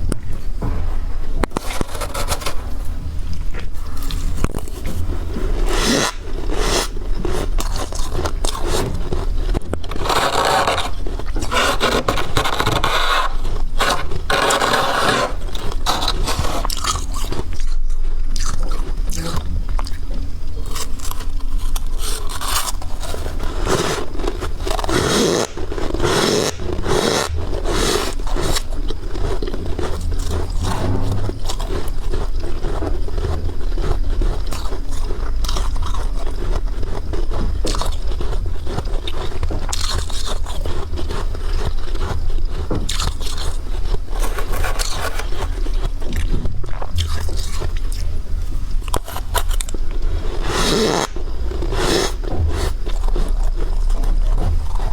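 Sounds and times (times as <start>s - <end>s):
scraping: 0.0s - 17.5s, 20.6s - 36.0s.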